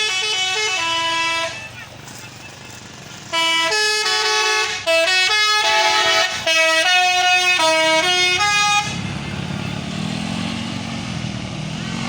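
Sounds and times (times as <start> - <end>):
bus air horn melody: 0.0 - 1.8, 3.2 - 9.2
low engine rumble: 0.0 - 12.0.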